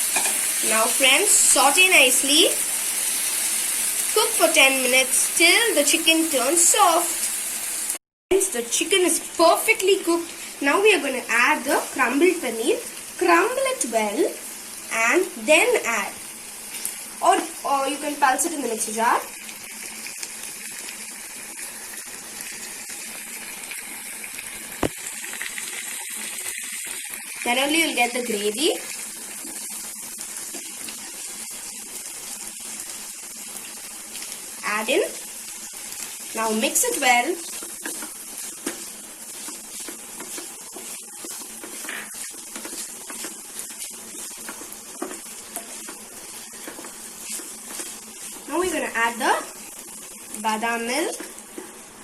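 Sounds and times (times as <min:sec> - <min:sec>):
spoon scraping a pan: 0:00.0 - 0:00.6, 0:36.7 - 0:48.8
chicken sizzling in a frying pan: 0:00.0 - 0:52.0.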